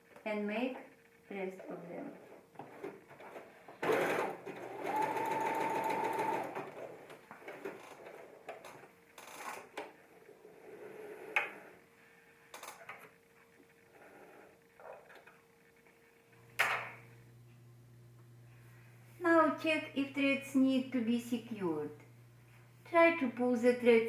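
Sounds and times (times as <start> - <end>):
sewing machine running: 3.8 - 7.0.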